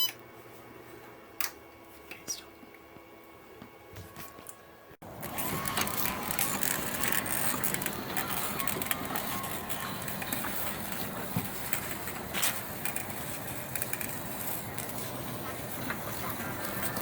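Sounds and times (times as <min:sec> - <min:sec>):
electric lawnmower running: 0:05.0 - 0:17.0.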